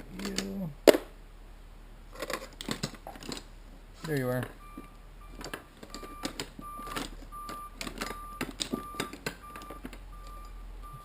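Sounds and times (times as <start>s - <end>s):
low steady hum: 0.0s - 11.0s
tools clicking and knocking: 2.2s - 3.5s, 5.4s - 10.4s
short electronic beeps: 4.6s - 11.0s.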